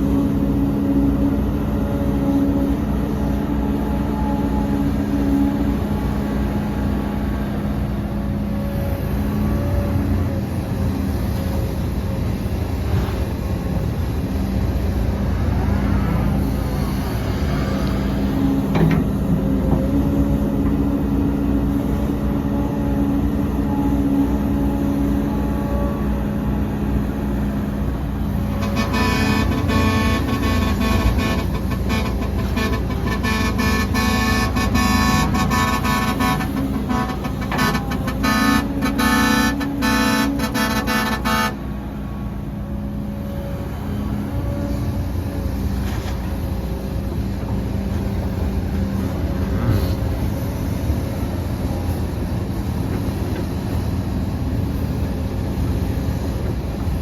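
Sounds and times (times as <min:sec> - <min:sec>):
diesel heavy machinery running: 0:00.0 - 0:57.0
vehicle horn: 0:28.5 - 0:41.8.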